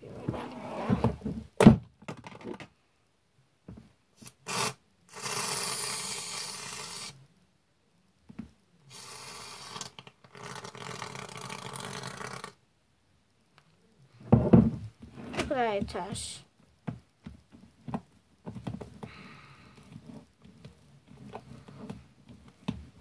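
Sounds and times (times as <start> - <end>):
thump: 0.9 - 1.9, 14.3 - 15.5.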